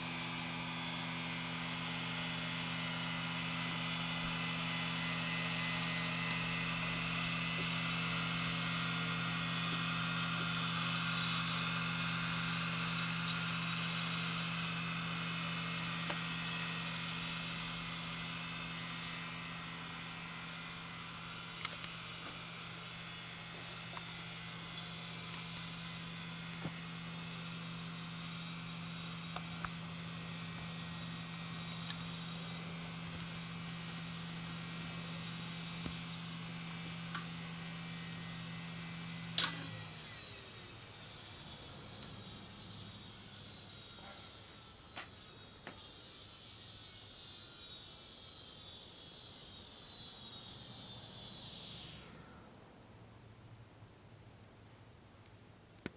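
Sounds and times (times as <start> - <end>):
hard disk drives humming: 0.0 - 47.9.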